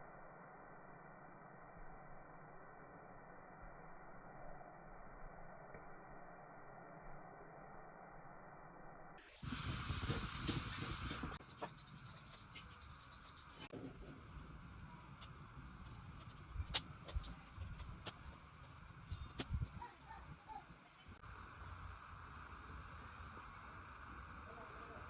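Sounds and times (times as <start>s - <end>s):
loud steady hiss: 9.4s - 12.5s.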